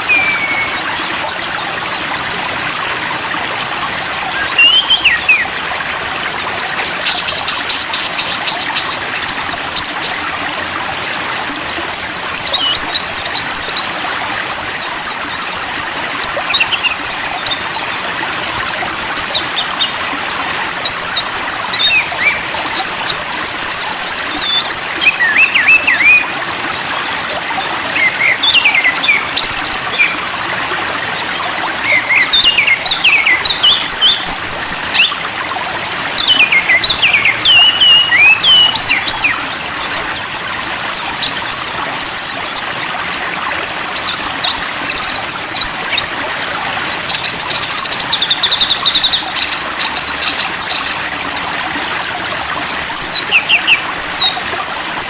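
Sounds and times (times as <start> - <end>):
songbirds chirping: 11.4 - 55.0.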